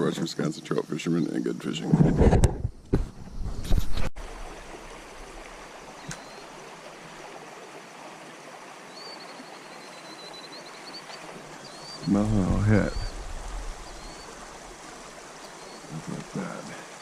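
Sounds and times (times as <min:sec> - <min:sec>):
stream water rushing: 0:04.2 - 0:17.0.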